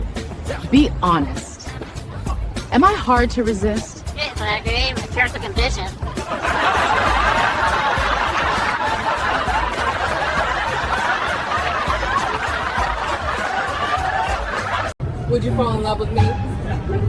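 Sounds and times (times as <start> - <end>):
background music with low beat: 0.0 - 17.0
crowd laughing: 5.9 - 15.0.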